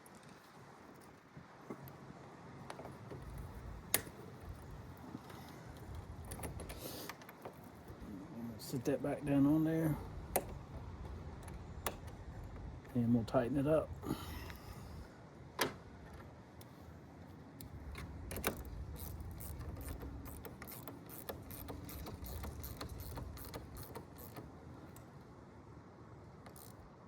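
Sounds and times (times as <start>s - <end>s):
wrench clicking on bolt: 17.6s - 24.5s, 26.5s - 26.8s.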